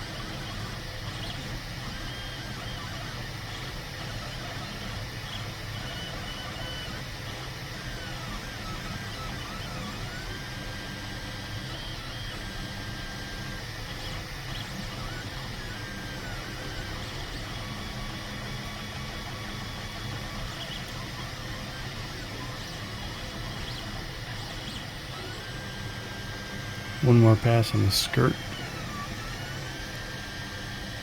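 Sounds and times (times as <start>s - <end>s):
stepper motors whining: 11.1s - 31.0s.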